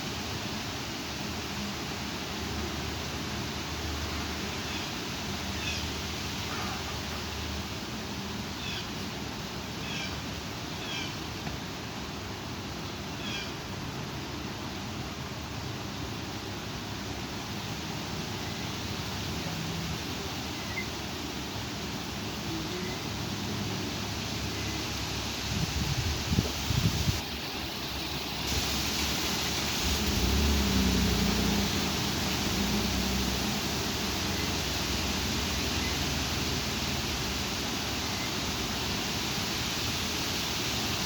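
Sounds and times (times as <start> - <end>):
strong wind rushing: 25.4 - 27.2.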